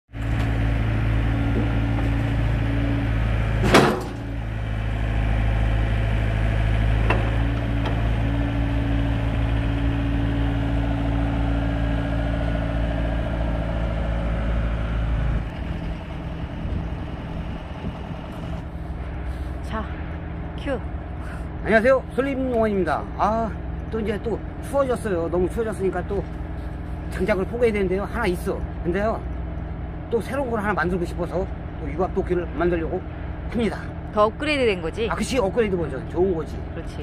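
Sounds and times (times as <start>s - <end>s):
heavy machine engine running: 0.1s - 37.0s
loud knock: 3.6s - 4.2s.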